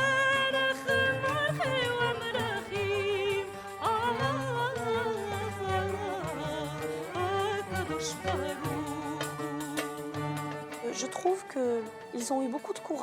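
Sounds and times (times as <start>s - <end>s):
person singing with vibrato: 0.0s - 10.4s
low sustained instrumental accompaniment: 5.6s - 13.0s.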